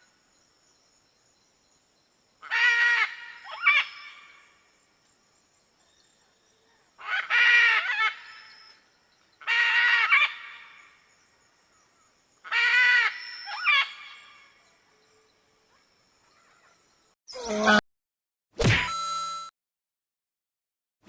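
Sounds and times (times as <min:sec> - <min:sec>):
macaw squawking: 0:02.4 - 0:04.3.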